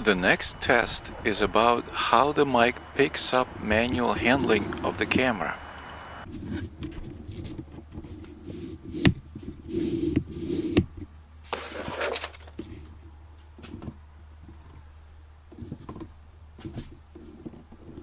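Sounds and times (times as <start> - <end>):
steady low hum: 0.0 - 18.0
hands rubbing camera body: 6.3 - 13.0, 15.5 - 18.0.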